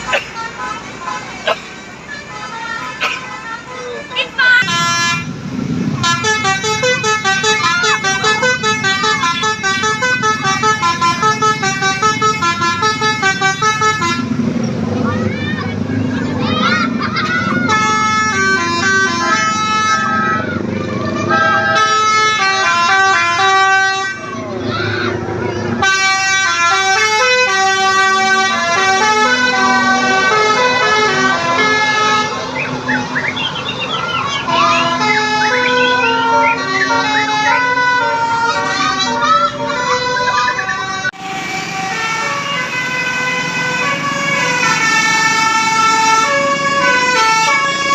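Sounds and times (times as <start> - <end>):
musical air horn melody: 4.6 - 5.4, 6.0 - 14.4, 17.7 - 20.5, 21.2 - 24.3, 25.8 - 32.5, 34.5 - 40.3.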